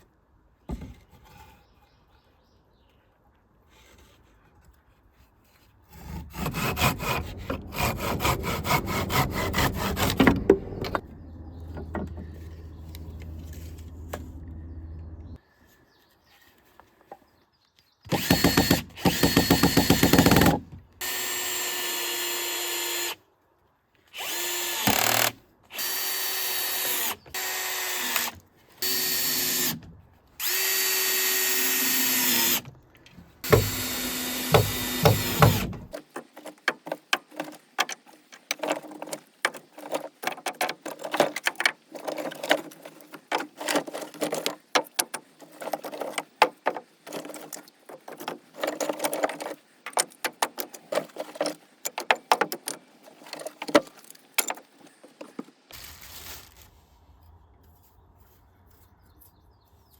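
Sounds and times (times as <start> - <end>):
power drill running: 18.1 - 20.4, 24.2 - 29.8, 30.4 - 32.6, 33.4 - 35.9.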